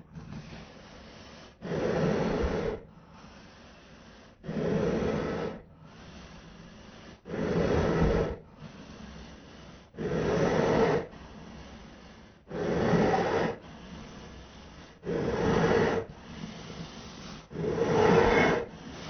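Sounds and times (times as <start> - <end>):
raspy zombie breathing: 0.0 - 19.0
zombie growling breaths: 0.0 - 19.0.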